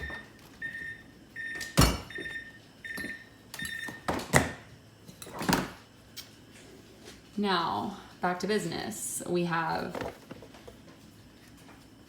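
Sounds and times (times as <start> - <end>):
refrigerator alarm beeping: 0.0 - 4.7.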